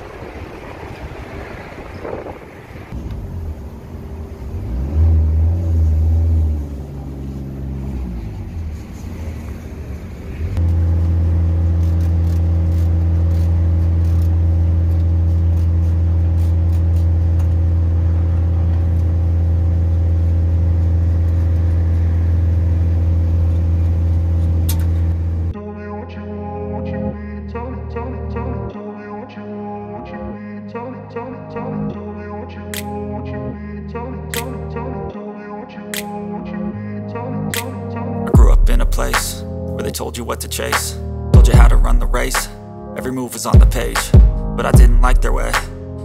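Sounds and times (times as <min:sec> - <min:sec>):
engine running: 0:00.0 - 0:25.6, 0:37.6 - 0:42.8, 0:43.6 - 0:46.0.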